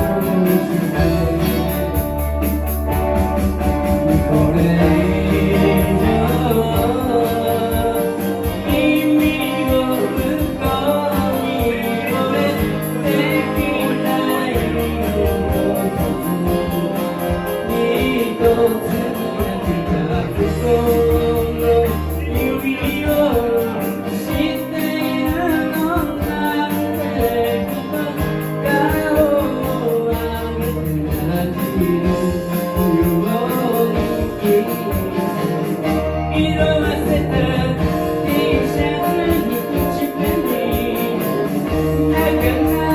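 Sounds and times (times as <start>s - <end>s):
pulsing bass: 0.0s - 17.7s, 34.0s - 40.0s
live band playing pop song: 0.0s - 42.9s
person singing: 0.0s - 42.9s.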